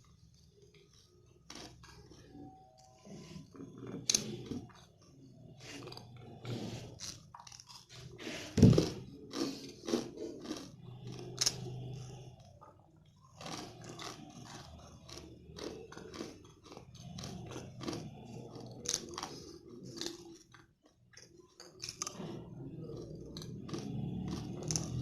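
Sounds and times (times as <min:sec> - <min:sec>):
chewing crunchy candy: 0:00.0 - 0:25.0.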